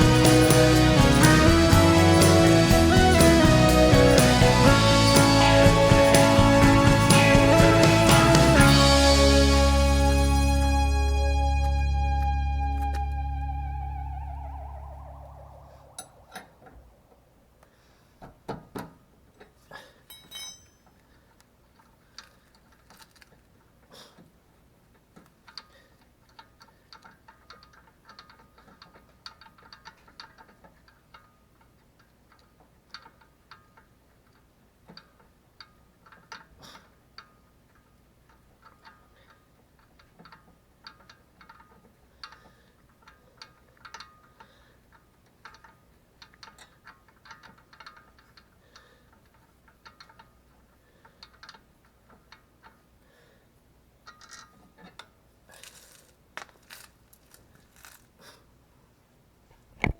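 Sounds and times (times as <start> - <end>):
faint clicks and metallic ticks: 19.3 - 53.0, 54.0 - 58.2.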